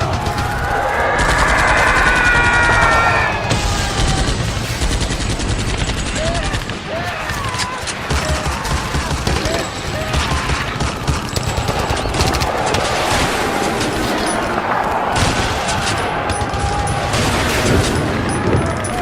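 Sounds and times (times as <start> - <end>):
low rumble: 0.0 - 5.8
rapid gunfire: 0.0 - 19.0.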